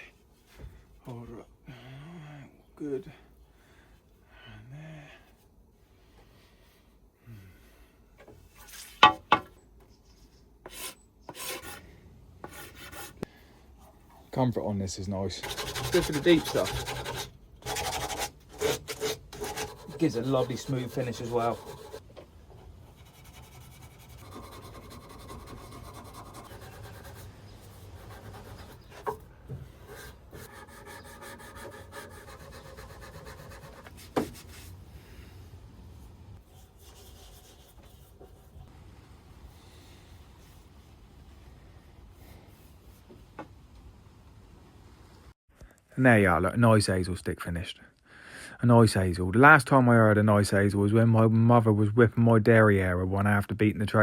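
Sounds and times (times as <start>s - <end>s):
rasp scraping wood: 10.6s - 11.8s, 15.4s - 22.0s, 22.6s - 34.7s
tool rubbing along wood: 15.4s - 22.0s, 22.6s - 34.5s.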